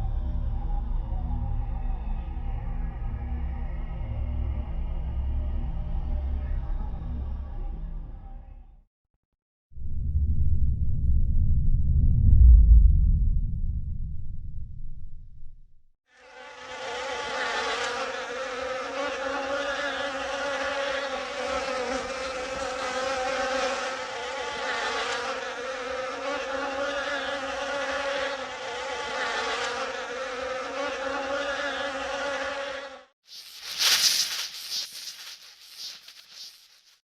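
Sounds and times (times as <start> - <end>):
low rumble: 9.8 - 15.9
flying insect buzzing: 16.2 - 37.0.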